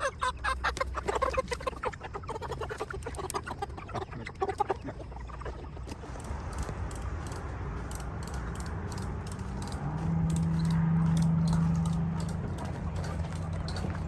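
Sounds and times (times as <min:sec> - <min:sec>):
engine humming: 0:00.0 - 0:14.0
light rattling clicks: 0:06.1 - 0:14.0.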